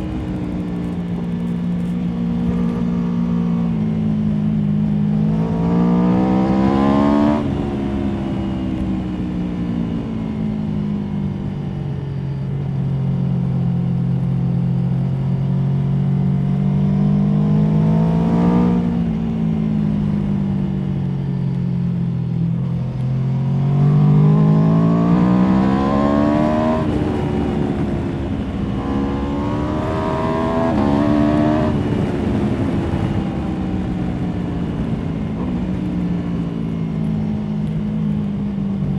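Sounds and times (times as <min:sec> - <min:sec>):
motorcycle engine revving: 0:00.0 - 0:08.8, 0:22.5 - 0:38.9.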